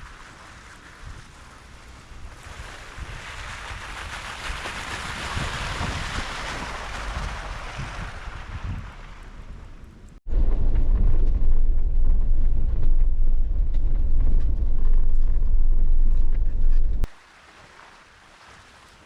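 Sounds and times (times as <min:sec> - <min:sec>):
wind buffeting microphone: 0:00.0 - 0:17.1
vehicle engine rumbling: 0:06.7 - 0:17.1.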